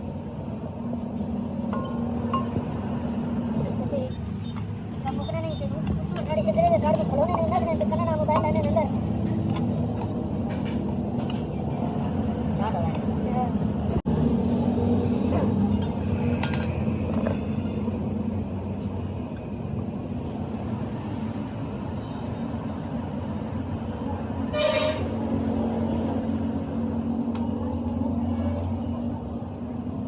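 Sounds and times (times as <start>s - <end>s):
motor vehicles rumbling: 0.0s - 30.0s
vehicle horn tooting: 24.5s - 25.2s.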